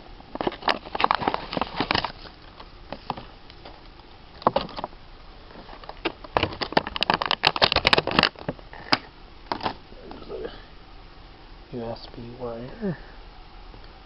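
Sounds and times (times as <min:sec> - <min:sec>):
box packaging crackling: 0:00.4 - 0:03.8, 0:05.7 - 0:08.5.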